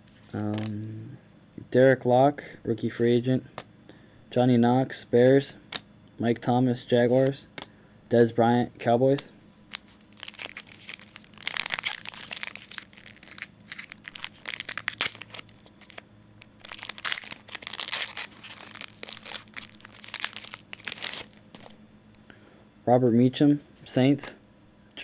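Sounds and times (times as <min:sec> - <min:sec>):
plastic wrapper crinkling and tearing: 0:09.7 - 0:21.8.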